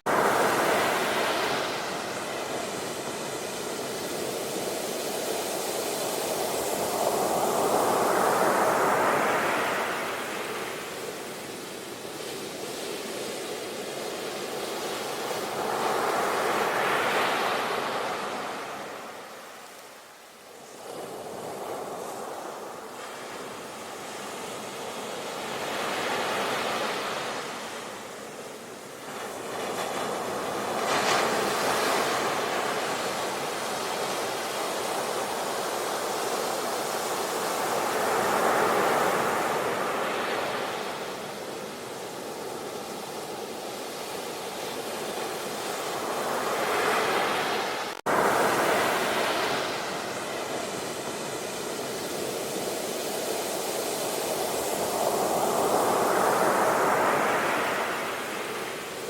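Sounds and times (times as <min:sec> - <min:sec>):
waves breaking: 0:13.8 - 0:59.0.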